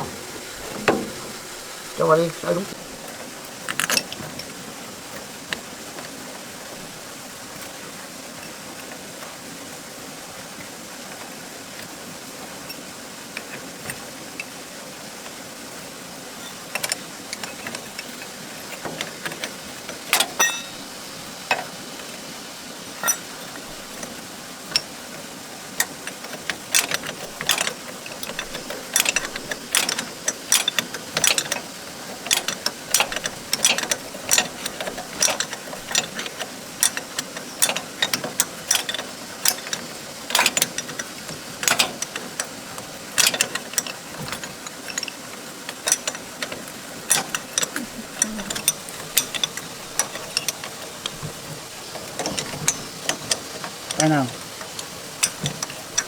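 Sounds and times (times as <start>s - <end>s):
metal tools clinking on bolts: 0.0s - 5.6s, 16.4s - 21.8s, 22.9s - 25.0s, 25.8s - 56.0s
steady low hiss: 0.0s - 56.0s.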